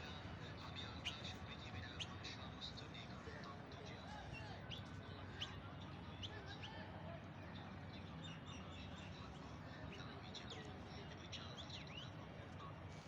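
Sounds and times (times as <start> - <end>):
birds chirping: 0.8 - 1.3.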